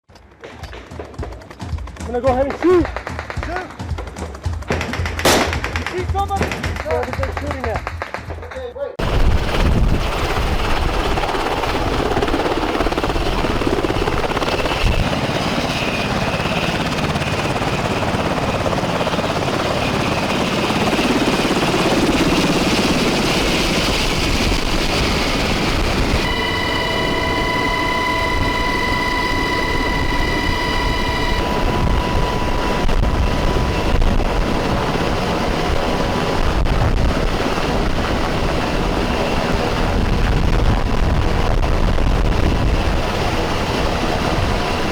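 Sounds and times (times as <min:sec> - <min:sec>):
helicopter rotor and turbine: 0:09.0 - 0:44.9
high whine: 0:23.3 - 0:44.8.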